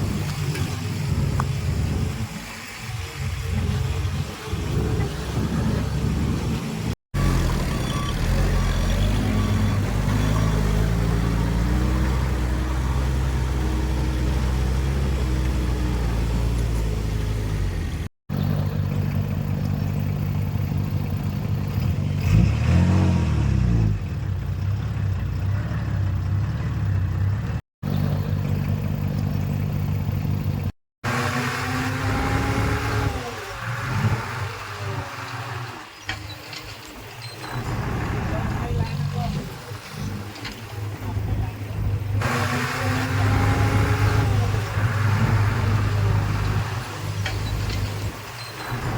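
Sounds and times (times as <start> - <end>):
heavy diesel engines under load: 0.0 - 48.9
engine revving: 3.4 - 18.1, 21.4 - 28.5, 31.0 - 36.0, 37.4 - 48.9.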